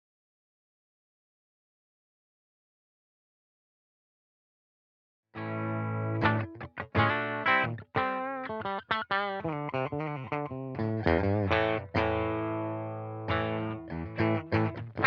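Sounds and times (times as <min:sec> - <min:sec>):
distorted electric guitar notes: 0:05.4 - 0:15.0.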